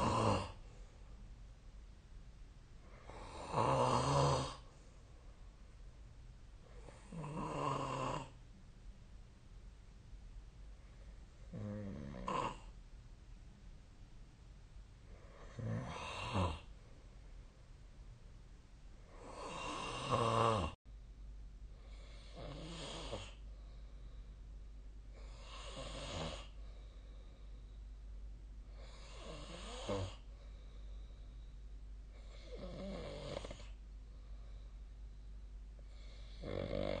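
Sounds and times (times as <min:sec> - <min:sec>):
person snoring: 0:00.0 - 0:00.7, 0:02.9 - 0:04.7, 0:06.8 - 0:08.4, 0:11.5 - 0:12.7, 0:15.2 - 0:16.7, 0:19.1 - 0:20.8, 0:21.9 - 0:23.4, 0:25.2 - 0:26.6, 0:28.7 - 0:30.3, 0:32.2 - 0:33.8, 0:35.9 - 0:37.0.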